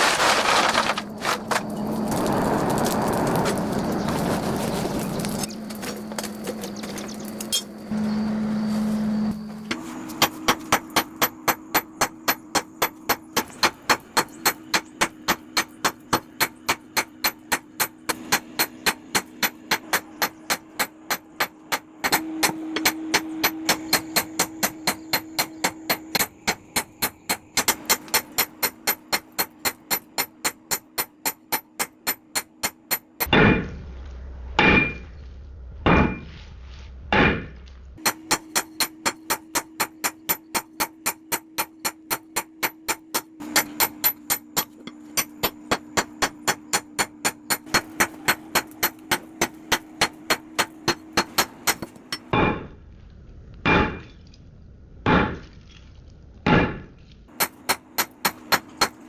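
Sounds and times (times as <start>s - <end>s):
hammer striking metal on anvil: 10.2s - 33.7s, 34.6s - 35.0s, 35.9s - 36.3s, 37.1s - 52.8s, 53.7s - 54.1s, 55.1s - 55.5s, 56.5s - 59.0s.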